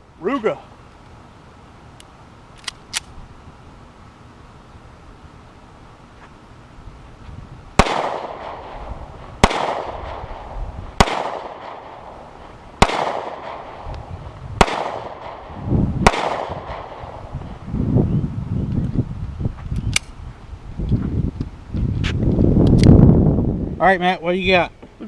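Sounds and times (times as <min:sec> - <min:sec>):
pistol shots: 0:07.8 - 0:12.2, 0:12.8 - 0:13.8, 0:14.6 - 0:17.2.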